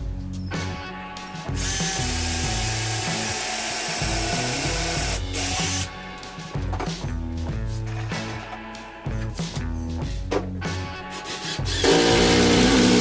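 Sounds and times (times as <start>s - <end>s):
background music: 0.0s - 13.0s
power drill whining: 1.6s - 5.9s, 11.1s - 13.0s.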